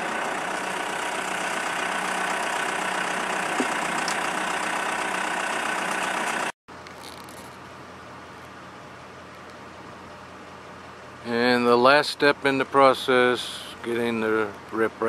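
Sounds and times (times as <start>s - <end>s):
heavy machinery engine running: 0.0s - 9.2s.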